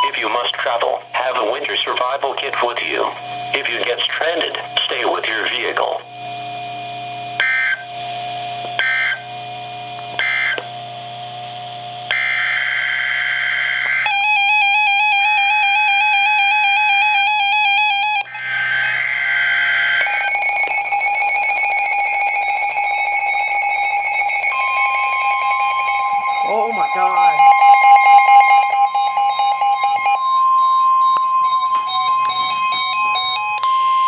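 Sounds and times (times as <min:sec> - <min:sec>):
warbling electronic alert tone: 0:17.6 - 0:33.6
buzzy data bursts: 0:17.8 - 0:30.2
steady electronic alert tone: 0:18.2 - 0:33.5.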